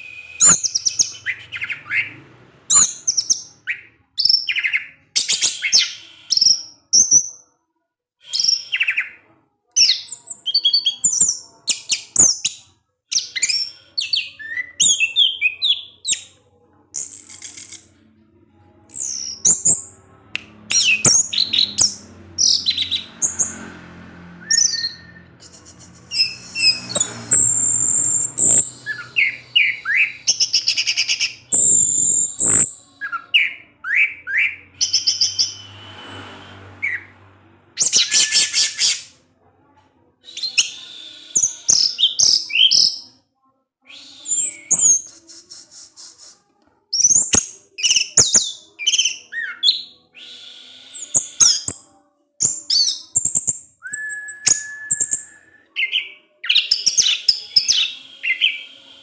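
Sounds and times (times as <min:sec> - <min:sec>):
thrush singing: 0:13.1 - 0:39.2, 0:43.9 - 0:59.0.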